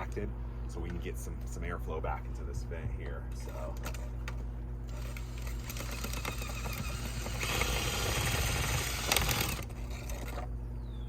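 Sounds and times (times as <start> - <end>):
scraping rattle inside duct: 3.4 - 10.5.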